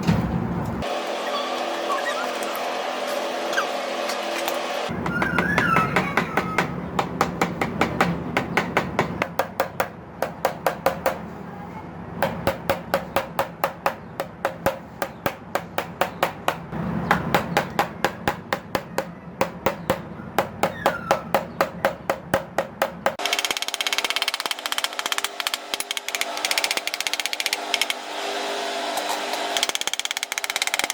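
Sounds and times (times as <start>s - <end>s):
hammer tapping on metal: 12.2s - 28.0s.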